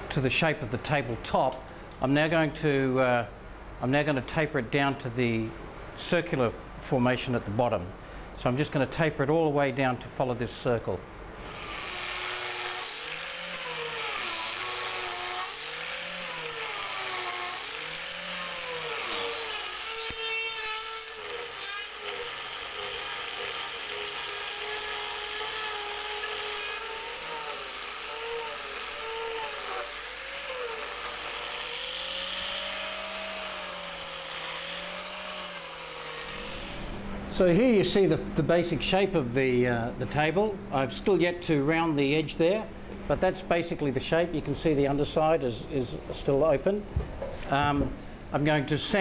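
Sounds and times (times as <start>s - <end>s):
grinder carving wood: 11.4s - 37.0s.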